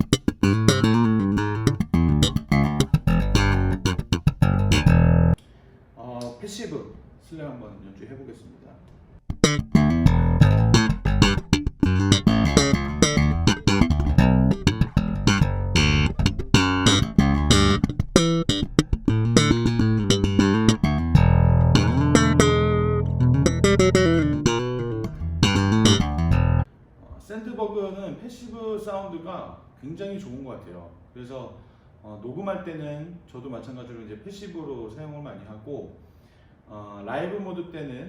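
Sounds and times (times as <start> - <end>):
slap electric bass: 0.0 - 5.4, 9.3 - 26.7.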